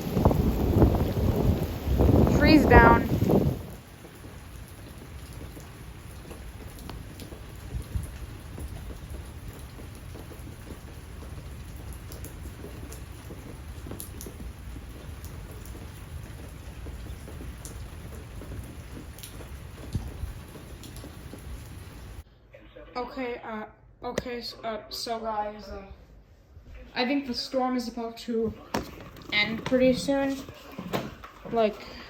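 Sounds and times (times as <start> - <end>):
low thunder rumble: 0.0 - 22.2
raindrops tapping surfaces: 0.0 - 22.2, 28.5 - 32.0
steady rain: 0.0 - 22.2.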